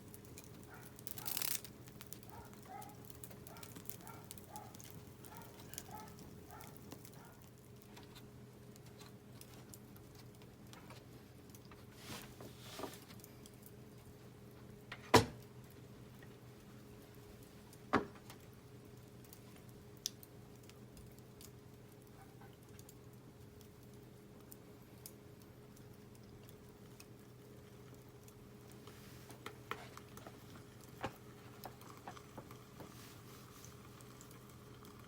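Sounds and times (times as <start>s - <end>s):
sharp fire pops: 0.0s - 7.4s
wood fire crackling: 0.0s - 35.0s.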